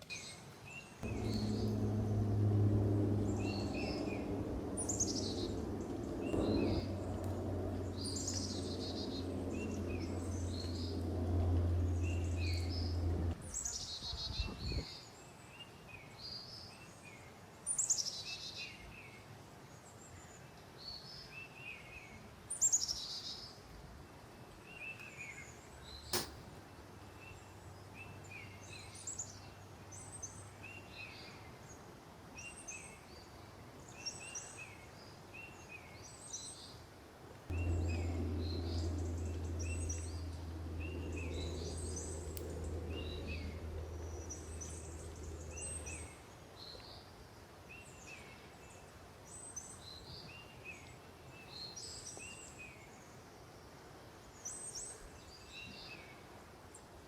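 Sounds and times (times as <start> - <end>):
low steady rumble: 1.0 - 13.6, 26.2 - 30.6, 37.5 - 46.4
sharp click: 26.2 - 26.6.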